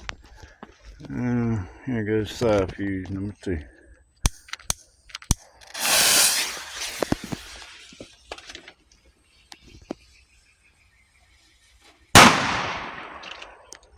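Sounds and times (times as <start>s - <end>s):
firecracker fuse hissing: 5.6s - 12.1s
firecracker bang: 5.7s - 7.7s, 12.2s - 13.4s.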